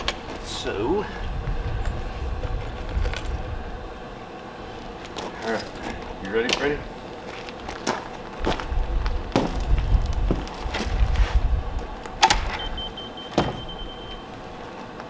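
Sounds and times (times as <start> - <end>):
thin high whine: 11.5 - 15.0
sharp knocks against wood: 13.4 - 13.7.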